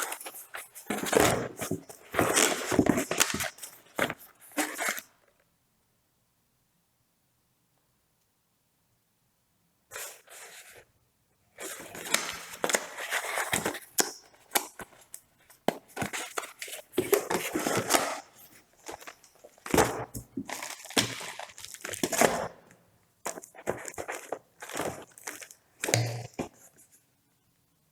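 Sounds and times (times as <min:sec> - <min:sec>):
packaging crinkling and tearing: 0:16.0 - 0:22.6, 0:23.3 - 0:26.5.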